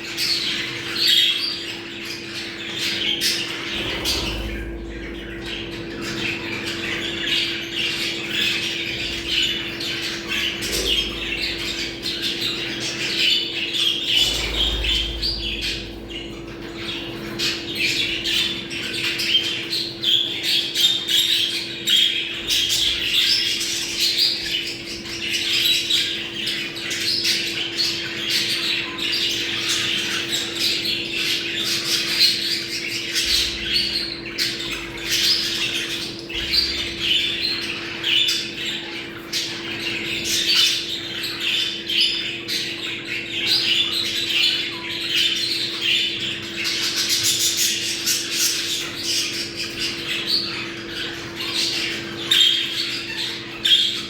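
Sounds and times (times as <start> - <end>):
budgerigars chattering: 0.0 - 54.0
steady low hum: 2.0 - 20.8, 29.4 - 41.0.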